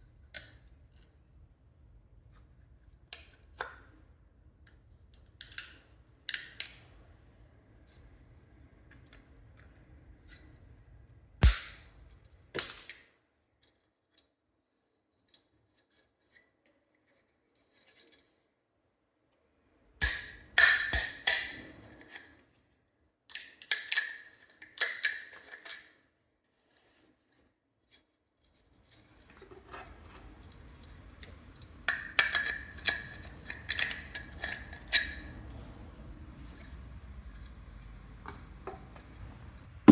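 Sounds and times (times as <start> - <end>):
hand tool clicks and snips: 11.4 - 11.8, 20.0 - 21.6.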